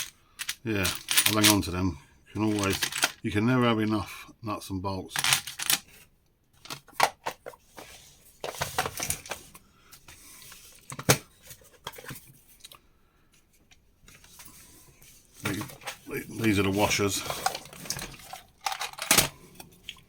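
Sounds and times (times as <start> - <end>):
metal nuts and bolts clinking: 0.0 - 1.7, 2.4 - 3.2, 17.2 - 19.4.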